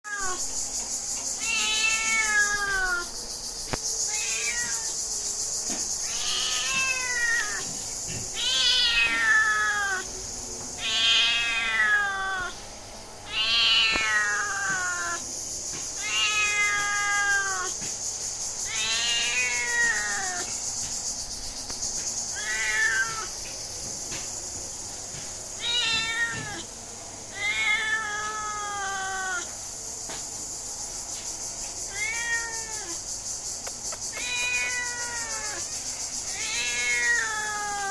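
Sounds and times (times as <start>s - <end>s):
steady hiss: 0.2s - 37.9s
cat meowing: 1.4s - 3.1s, 4.1s - 5.0s, 6.0s - 7.7s, 8.4s - 10.1s, 10.8s - 12.6s, 13.3s - 15.2s, 16.0s - 17.8s, 18.7s - 20.5s, 22.3s - 23.3s, 25.6s - 26.7s, 27.3s - 29.5s, 31.9s - 33.0s, 34.1s - 35.6s.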